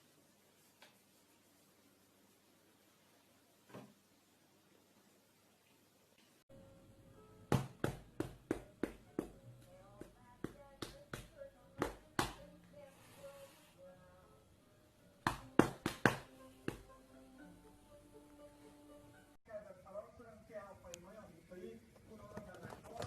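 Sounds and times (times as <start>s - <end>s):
faint music: 6.5s - 23.0s.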